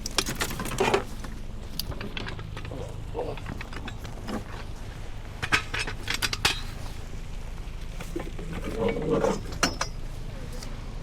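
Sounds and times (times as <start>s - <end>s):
steady low rumble: 0.0s - 11.0s
sharp metallic clinks and knocks: 5.4s - 7.0s, 8.8s - 10.2s.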